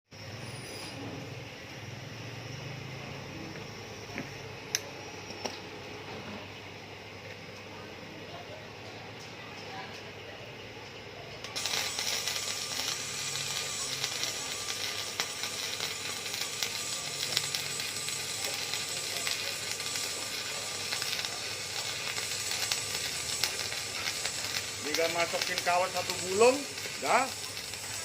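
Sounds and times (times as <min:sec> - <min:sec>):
welding arc crackling and popping: 0:11.4 - 0:28.0.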